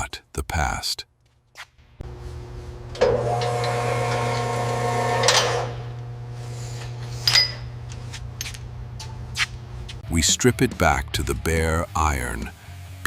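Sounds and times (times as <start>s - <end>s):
constant low hum: 1.2s - 10.2s
power tool whirring: 2.0s - 9.0s.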